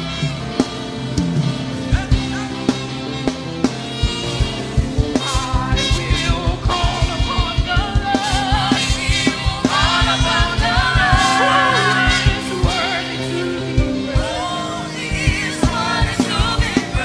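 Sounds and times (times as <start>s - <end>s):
gospel band playing: 0.0s - 17.0s
fast drum beat: 3.5s - 13.0s
lead singer's wavering vocal: 5.4s - 17.0s.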